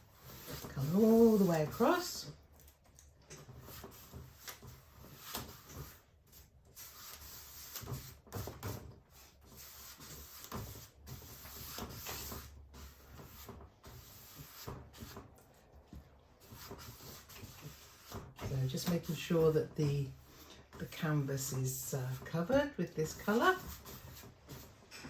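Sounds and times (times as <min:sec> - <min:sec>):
brush scrubbing paint on canvas: 0:00.0 - 0:02.4, 0:03.4 - 0:25.0.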